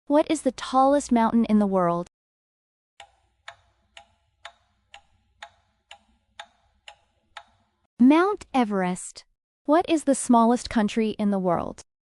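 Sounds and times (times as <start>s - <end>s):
clock-like timer ticks: 3.0s - 7.8s.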